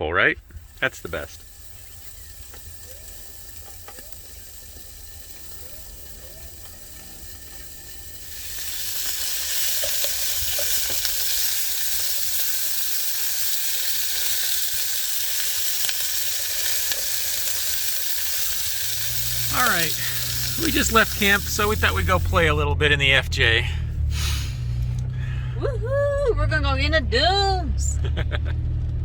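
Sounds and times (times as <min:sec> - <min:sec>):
food sizzling in a pan: 0:00.4 - 0:22.4
low hum: 0:00.4 - 0:29.0.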